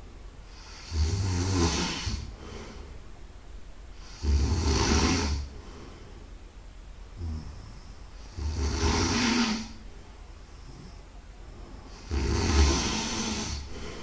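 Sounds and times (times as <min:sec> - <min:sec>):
quiet breath: 0:00.0 - 0:03.2, 0:05.2 - 0:06.5, 0:07.1 - 0:14.0
person snoring loudly: 0:00.5 - 0:02.3, 0:04.0 - 0:05.5, 0:07.2 - 0:09.8, 0:11.9 - 0:14.0.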